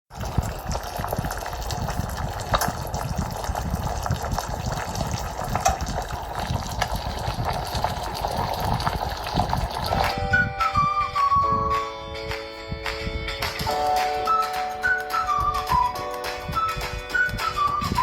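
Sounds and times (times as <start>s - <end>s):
music: 9.8s - 18.0s.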